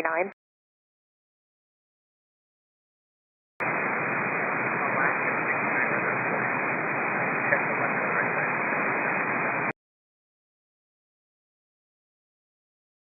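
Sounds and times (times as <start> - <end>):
radio static hiss: 3.6 - 9.8.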